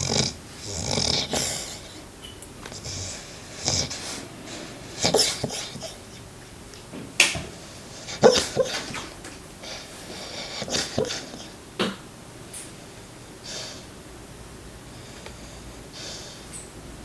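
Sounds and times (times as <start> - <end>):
puppy snoring: 0.0 - 6.2, 7.6 - 11.6.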